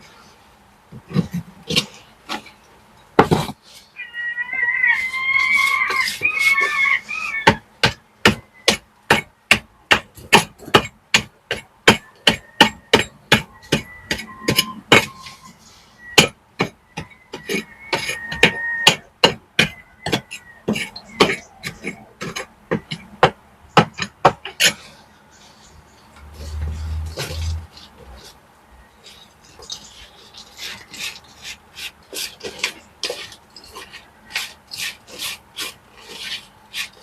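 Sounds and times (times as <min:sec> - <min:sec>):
hammer striking: 0:07.5 - 0:15.3, 0:16.2 - 0:24.4.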